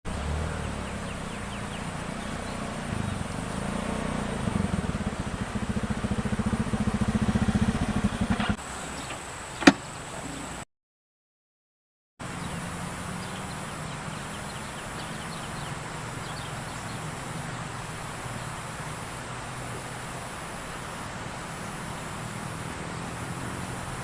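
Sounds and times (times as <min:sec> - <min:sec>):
small engine running: 0:00.1 - 0:08.6.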